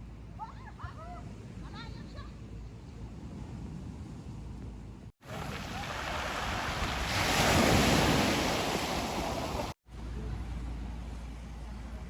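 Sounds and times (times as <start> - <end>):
ocean wave rushing: 5.2 - 9.8
steady surf rumble: 5.3 - 9.8.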